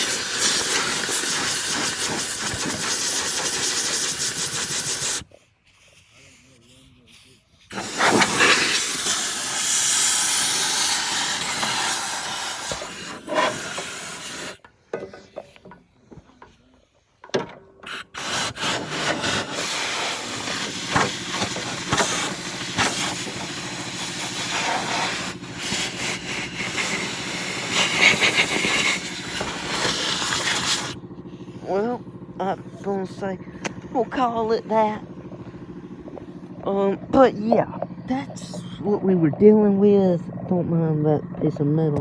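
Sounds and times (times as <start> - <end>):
loud steady hiss: 0.0 - 5.3, 7.7 - 14.7, 17.9 - 31.0.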